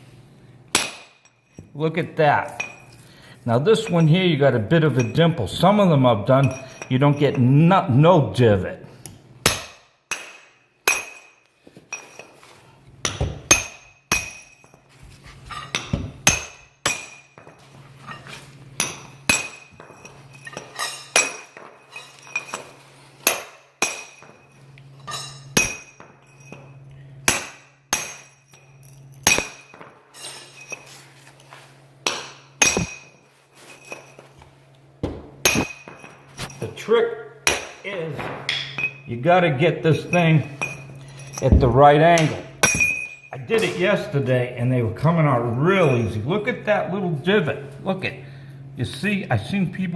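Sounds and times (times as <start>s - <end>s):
sledgehammer striking steel chisel: 0.7s - 1.4s, 9.4s - 12.0s, 13.0s - 14.8s, 15.6s - 17.6s, 18.8s - 22.6s, 23.2s - 26.7s, 27.3s - 30.9s, 32.0s - 33.2s, 35.4s - 36.7s, 42.2s - 43.8s.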